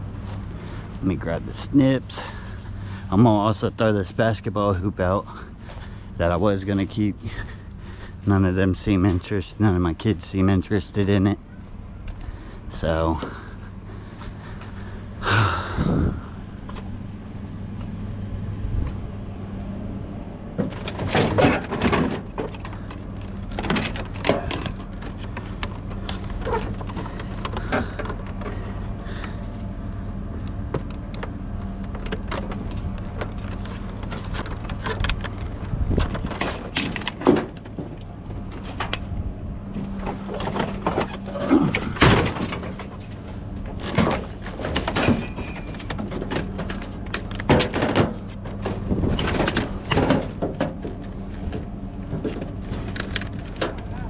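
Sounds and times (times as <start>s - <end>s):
steady low hum: 0.0s - 54.0s
scrap metal clanking and cracking: 20.6s - 29.7s, 30.7s - 39.1s, 39.7s - 54.0s.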